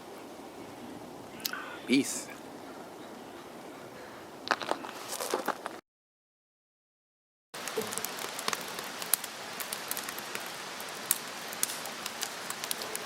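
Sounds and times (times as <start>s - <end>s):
rain falling: 0.0s - 5.5s, 7.6s - 13.0s
raindrops ticking on surfaces: 7.6s - 13.0s.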